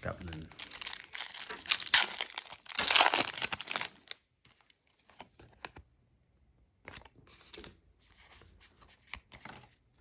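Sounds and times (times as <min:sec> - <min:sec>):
foil wrapper crinkling: 0:00.3 - 0:04.2.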